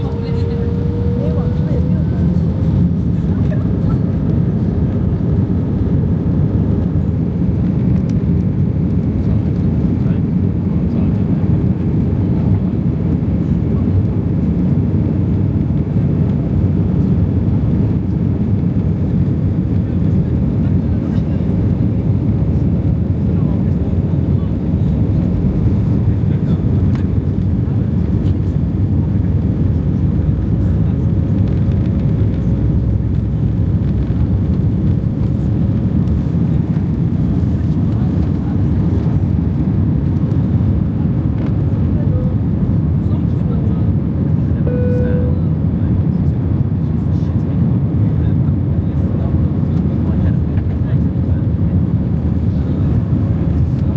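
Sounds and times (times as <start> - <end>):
jet engines and airflow rumble: 0.0 - 53.9
faint steady hum: 44.6 - 45.6.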